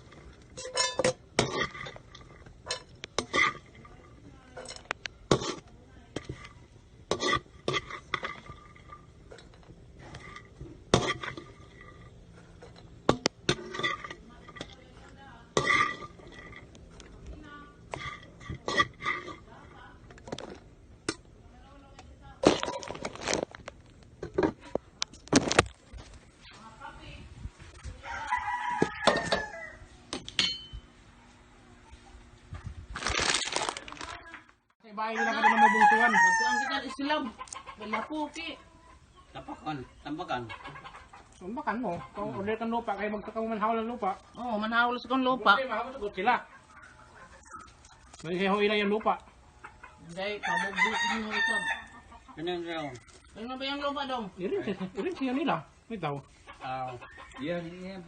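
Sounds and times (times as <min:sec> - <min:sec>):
dishes clinking: 0:00.6 - 0:03.7, 0:30.2 - 0:30.9
rooster crowing: 0:28.0 - 0:30.0, 0:35.0 - 0:37.2, 0:50.2 - 0:52.1.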